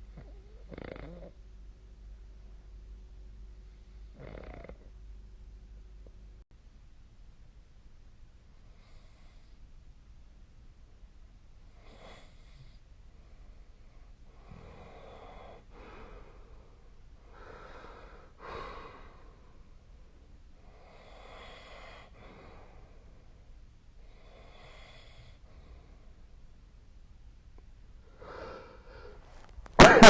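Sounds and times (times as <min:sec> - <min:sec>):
person breathing noisily: 0:14.5 - 0:19.5, 0:28.1 - 0:29.4.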